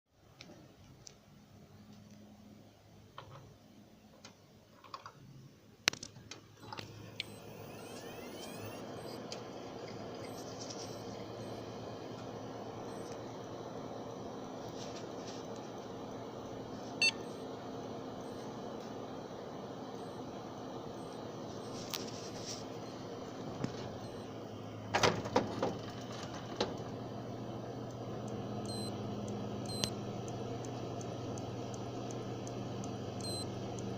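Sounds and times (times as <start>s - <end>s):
computer running hum and hiss: 6.5s - 33.9s
hard drive spinning up: 6.6s - 33.9s
sharp clicks: 27.9s - 33.9s.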